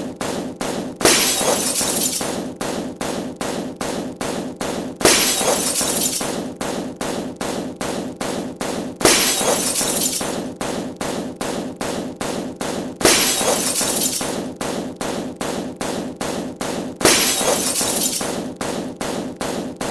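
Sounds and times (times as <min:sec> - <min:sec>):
glass shattering: 0:01.0 - 0:02.3, 0:05.0 - 0:06.3, 0:09.0 - 0:10.3, 0:13.0 - 0:14.3, 0:17.0 - 0:18.3
loud glass crash: 0:01.0 - 0:02.3, 0:05.0 - 0:06.3, 0:09.0 - 0:10.3, 0:13.0 - 0:14.3, 0:17.0 - 0:18.3.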